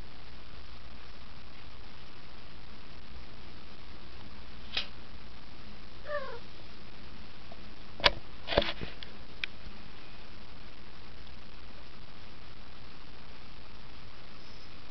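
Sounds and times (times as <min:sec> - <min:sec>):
steady hiss: 0:00.0 - 0:14.9
kitten mewing: 0:06.0 - 0:06.5.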